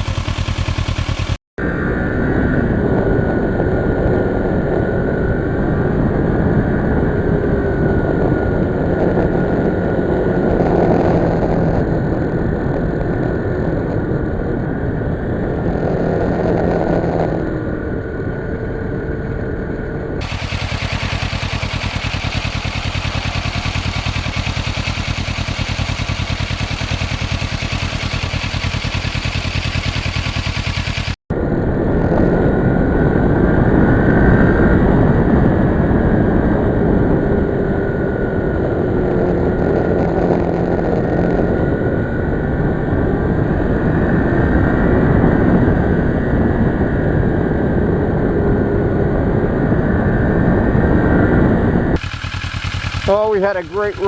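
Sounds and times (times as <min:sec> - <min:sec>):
motorcycle engine running: 0:00.0 - 0:02.0, 0:03.1 - 0:31.2, 0:36.1 - 0:43.9, 0:52.0 - 0:54.0
wind rush: 0:01.6 - 0:52.0.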